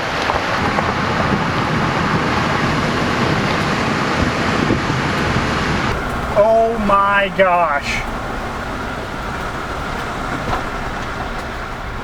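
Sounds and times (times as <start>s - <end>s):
strong wind on microphone: 0.0s - 6.4s.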